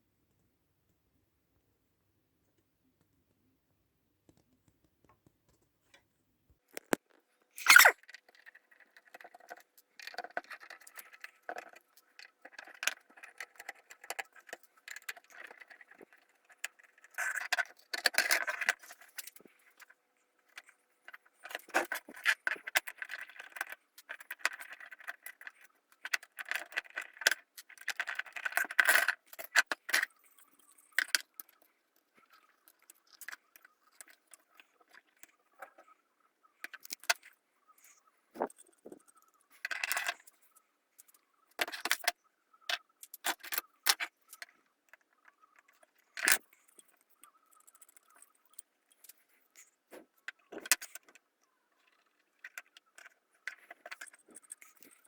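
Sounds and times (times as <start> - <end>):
small hard objects clicking: 6.7 - 19.6.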